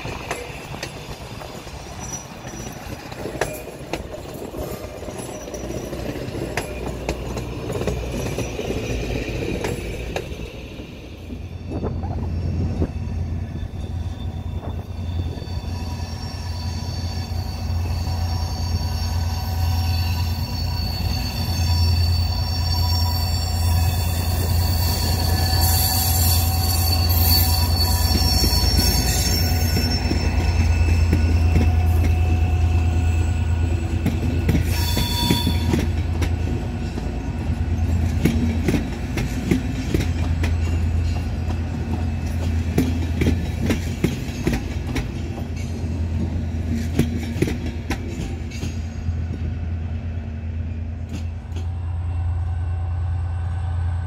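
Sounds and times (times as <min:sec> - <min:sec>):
diesel locomotive engine droning: 0:00.0 - 0:54.0
high-pitched wheel squeal: 0:11.3 - 0:36.1.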